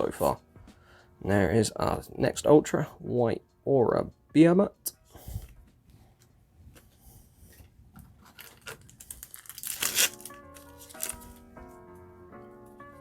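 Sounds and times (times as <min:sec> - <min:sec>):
background music with held notes: 0:00.0 - 0:08.1, 0:09.0 - 0:13.0
foil wrapper tearing and crinkling: 0:08.3 - 0:11.4.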